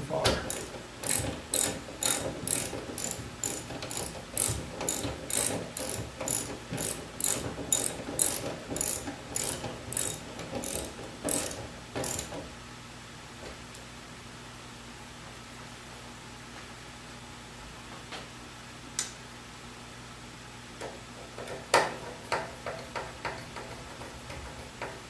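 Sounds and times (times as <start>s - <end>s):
garage door opener clicking: 0.2s - 12.5s.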